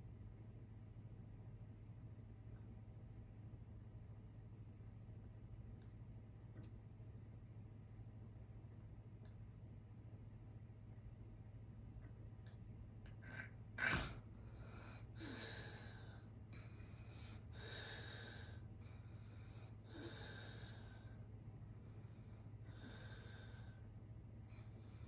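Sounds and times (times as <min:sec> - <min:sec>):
man breathing noisily in sleep: 0:13.2 - 0:25.0.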